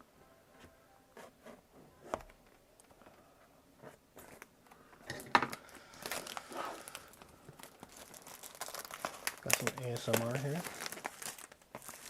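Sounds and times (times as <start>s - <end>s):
packaging rustling: 5.5s - 12.0s.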